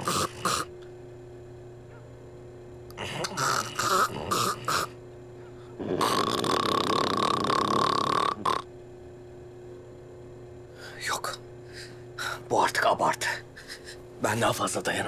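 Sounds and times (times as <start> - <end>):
man snoring: 0.0 - 0.7, 2.9 - 5.0, 5.8 - 8.7.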